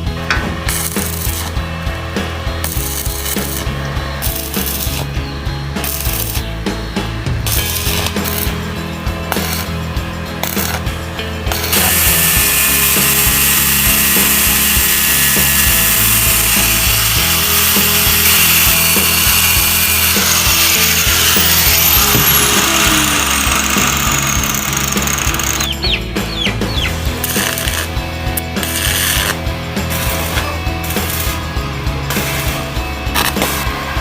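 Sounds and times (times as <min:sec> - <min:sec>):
power tool whining on wood: 0:11.5 - 0:26.0, 0:26.6 - 0:31.4.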